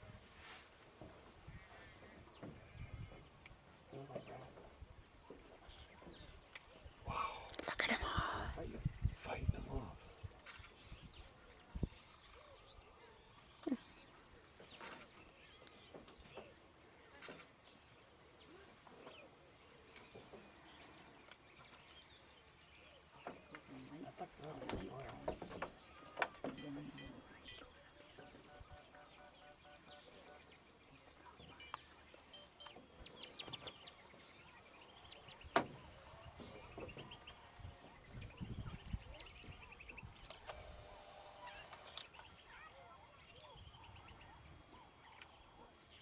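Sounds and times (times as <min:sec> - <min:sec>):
faint outdoor ambience: 0:00.0 - 0:46.0
bird chirps: 0:25.8 - 0:40.4
small clicks: 0:40.2 - 0:42.5.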